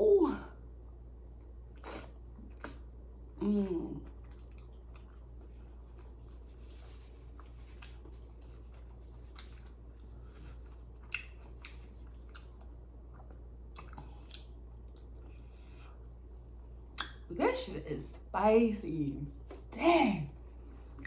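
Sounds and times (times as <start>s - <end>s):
chewing and wet mouth smacks: 1.7s - 17.3s.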